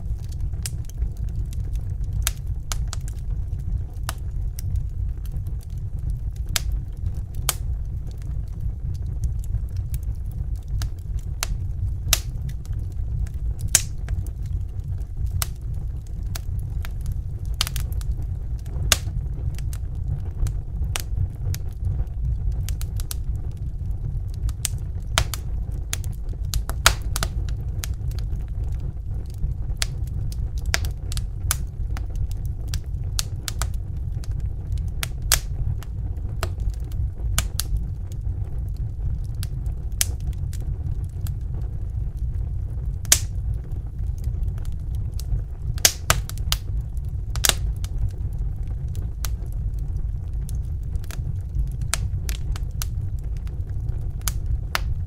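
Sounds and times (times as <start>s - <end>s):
wood fire crackling: 0.0s - 55.0s
sharp pops and snaps: 10.6s - 12.5s, 13.2s - 14.6s, 24.6s - 28.0s, 35.0s - 35.5s, 43.0s - 43.4s, 45.8s - 46.7s, 47.4s - 47.6s, 54.2s - 55.0s.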